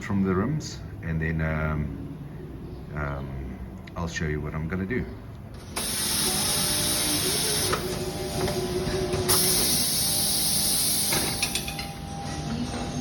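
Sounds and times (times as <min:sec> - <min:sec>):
loud steady hiss: 0:05.7 - 0:08.0, 0:09.3 - 0:11.6.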